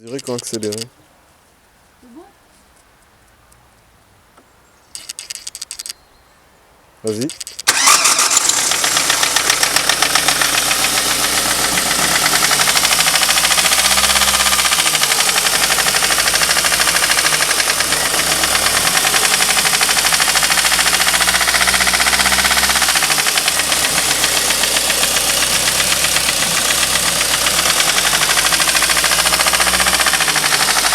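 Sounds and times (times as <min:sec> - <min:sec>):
metallic clacking: 0:05.0 - 0:06.0, 0:07.2 - 0:08.4
car engine running: 0:07.7 - 0:30.9.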